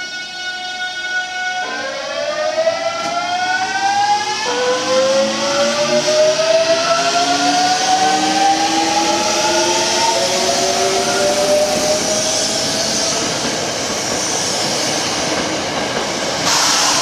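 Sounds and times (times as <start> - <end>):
electric train motors whining: 16.3 - 17.0.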